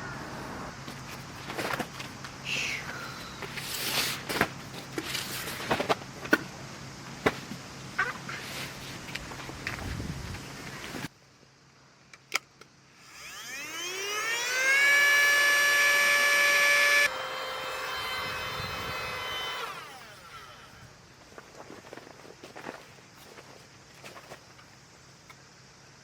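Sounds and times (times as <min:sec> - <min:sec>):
small electric motor whining: 0:12.9 - 0:21.0.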